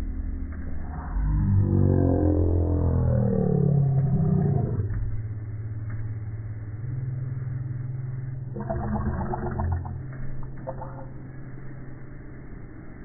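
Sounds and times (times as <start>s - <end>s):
low slowed burp drone: 0.0s - 11.9s.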